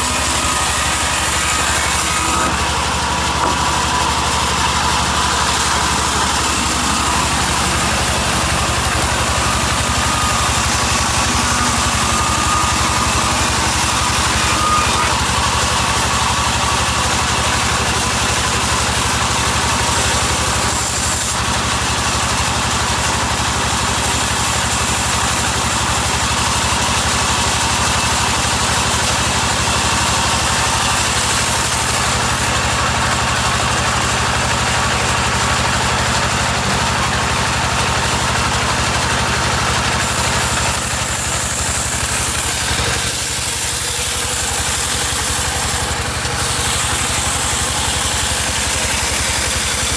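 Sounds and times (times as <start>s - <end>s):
sawmill machinery droning: 0.0s - 49.9s.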